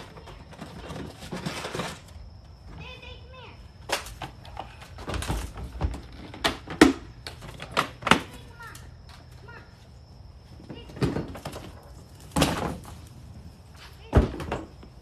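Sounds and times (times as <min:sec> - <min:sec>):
objects knocking and clattering: 0:00.0 - 0:02.2, 0:10.7 - 0:13.0.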